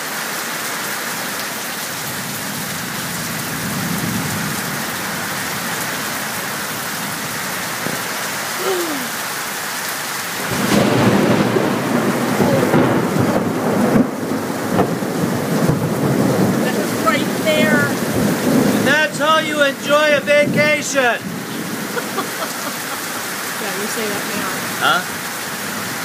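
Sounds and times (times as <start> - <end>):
rain falling: 0.0 - 26.0
rumble of thunder: 10.4 - 18.9.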